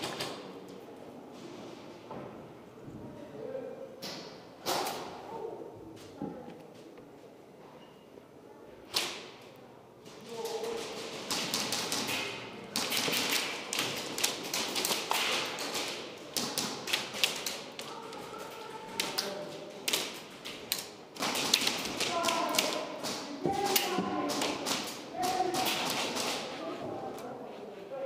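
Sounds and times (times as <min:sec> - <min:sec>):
faint voices: 0:08.1 - 0:15.2, 0:15.8 - 0:28.0.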